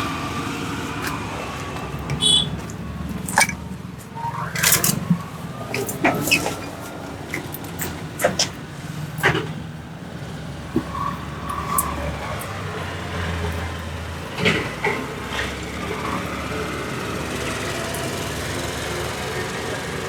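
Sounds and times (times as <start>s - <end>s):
street traffic: 0.0s - 20.0s
vehicle engine running: 4.8s - 20.0s.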